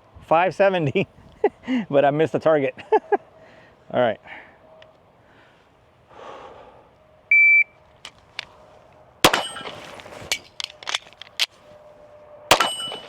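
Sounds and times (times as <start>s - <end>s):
shot timer beep: 7.3s - 7.8s
pistol shot: 9.2s - 10.0s, 12.5s - 13.0s
steel target ringing: 9.2s - 10.4s, 12.5s - 13.0s.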